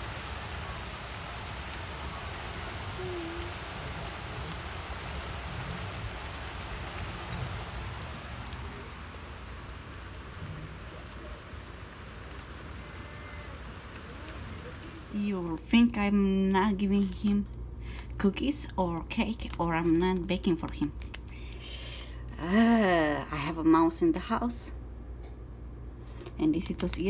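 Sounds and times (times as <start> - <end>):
steady rain falling: 0.0 - 16.2.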